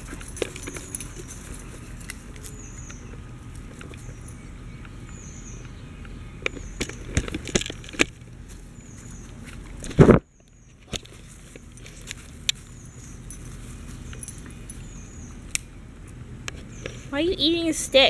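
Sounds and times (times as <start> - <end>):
puppy chewing on a stick: 0.0 - 5.2.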